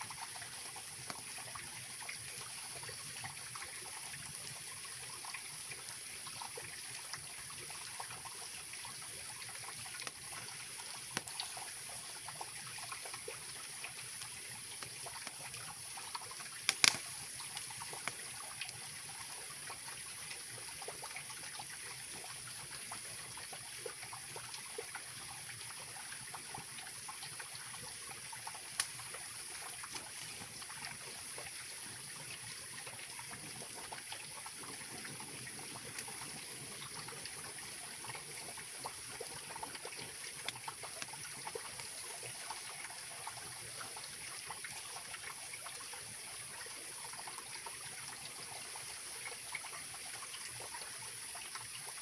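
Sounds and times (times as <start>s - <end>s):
campfire popping: 0.1s - 2.3s, 8.2s - 19.8s, 27.0s - 42.6s.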